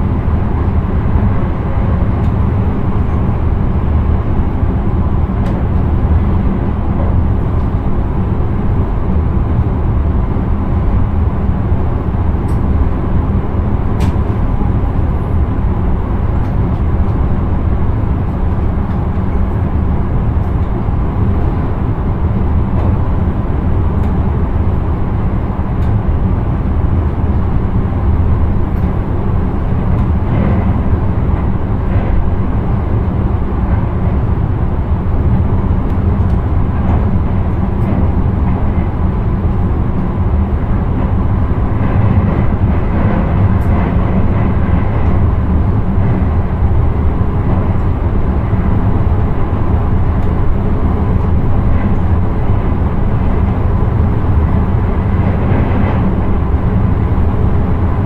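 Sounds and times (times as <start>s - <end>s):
train wheels rumbling on rail: 0.0s - 58.0s.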